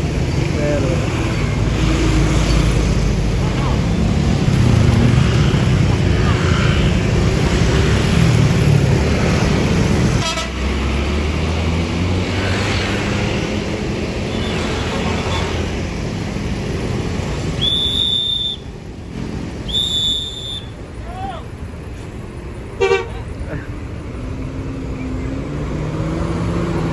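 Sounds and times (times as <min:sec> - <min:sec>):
buses and road traffic passing: 0:00.0 - 0:26.9
high-pitched horn toots: 0:10.2 - 0:10.7.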